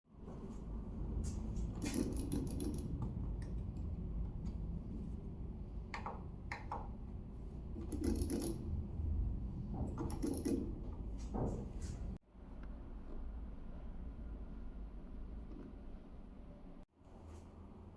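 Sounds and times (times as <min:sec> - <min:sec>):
steady low rumble: 0:00.1 - 0:16.9
mechanical clicks: 0:01.8 - 0:03.6, 0:07.8 - 0:08.6.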